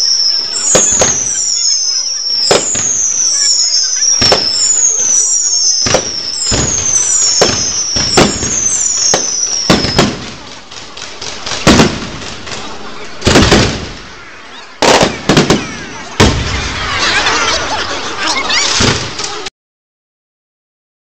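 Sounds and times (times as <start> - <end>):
firework whistles falling in pitch: 0.0 - 10.2, 13.3 - 16.8
firework bangs: 0.0 - 18.0, 18.6 - 19.4.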